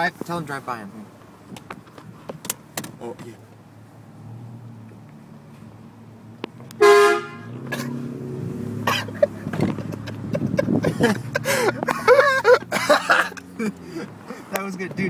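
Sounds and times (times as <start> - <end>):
road noise: 0.0 - 15.0
truck engine: 1.2 - 15.0
air horn blast: 6.8 - 7.9.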